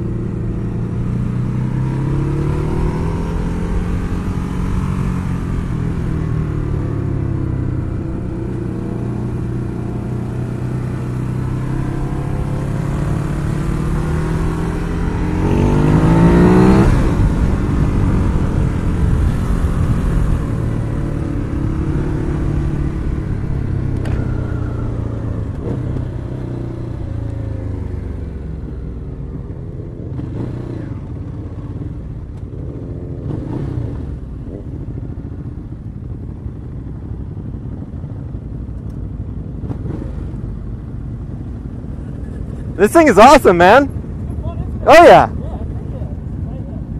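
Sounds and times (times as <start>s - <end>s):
motorcycle engine revving: 0.0s - 45.3s.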